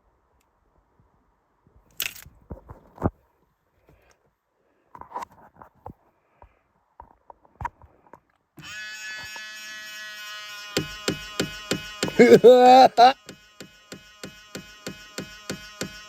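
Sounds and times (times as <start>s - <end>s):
mirror motor buzzing whine: 8.6s - 16.0s.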